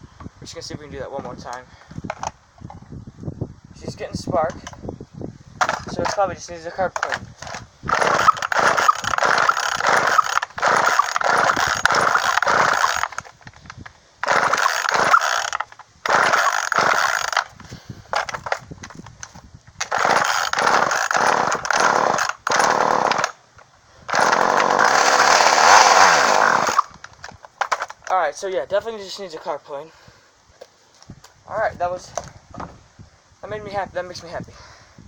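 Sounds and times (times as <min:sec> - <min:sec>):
chainsaw engine firing in bursts: 0:07.0 - 0:13.3, 0:14.2 - 0:18.6, 0:19.8 - 0:23.4, 0:24.1 - 0:27.0.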